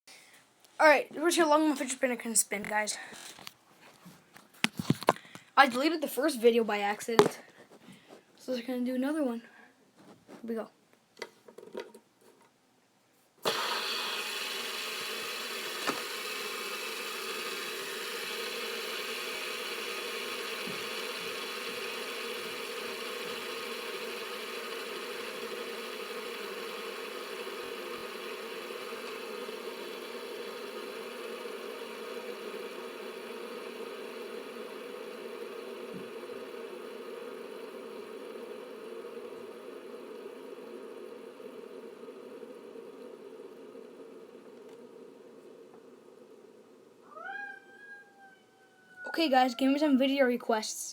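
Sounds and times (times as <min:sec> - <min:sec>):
fidget spinner whirring: 0:01.2 - 0:03.6, 0:04.3 - 0:09.3, 0:13.4 - 0:50.9.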